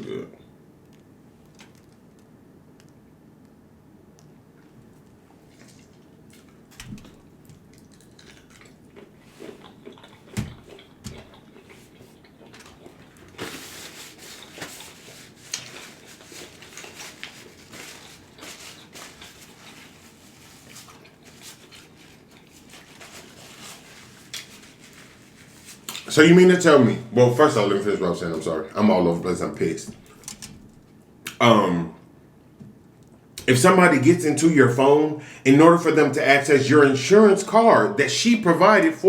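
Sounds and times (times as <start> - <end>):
chewing and mouth sounds: 4.2 - 26.1
crackling squishy eating noise: 4.6 - 26.7.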